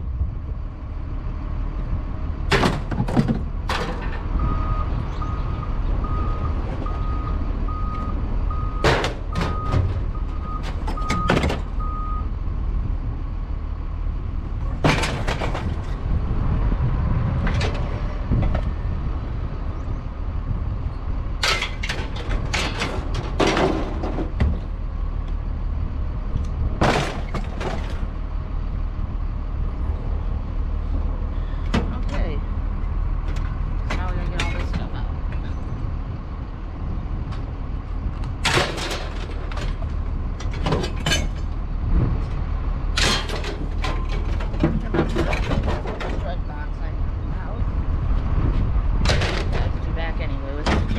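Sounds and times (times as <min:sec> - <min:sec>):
knocks and clanks: 0:02.5 - 0:04.6, 0:08.7 - 0:11.8, 0:14.6 - 0:16.2, 0:17.4 - 0:18.7, 0:21.4 - 0:24.8, 0:26.8 - 0:28.2, 0:38.1 - 0:46.7, 0:48.2 - 0:50.9.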